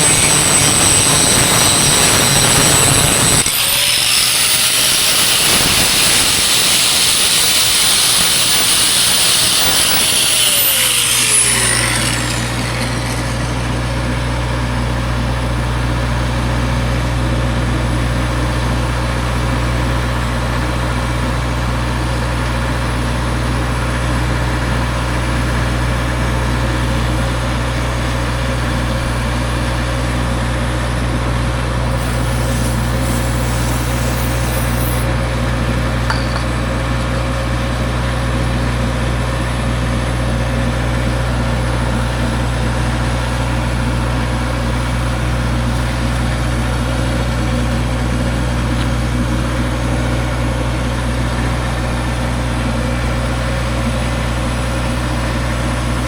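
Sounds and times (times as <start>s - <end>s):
angle grinder grinding: 0.0s - 14.5s, 31.8s - 35.2s, 36.1s - 36.6s.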